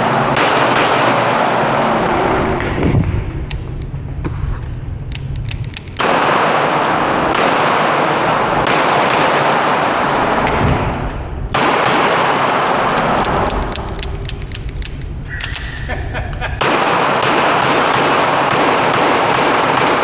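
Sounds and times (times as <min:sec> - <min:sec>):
handgun shots: 0:05.1 - 0:06.6, 0:11.6 - 0:15.8.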